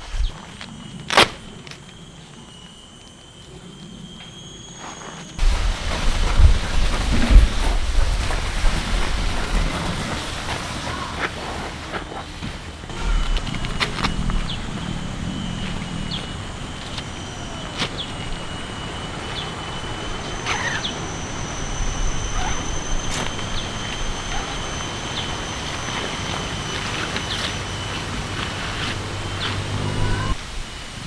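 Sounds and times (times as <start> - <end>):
insects whining: 0.0 - 31.0
bird chirps: 12.9 - 30.4.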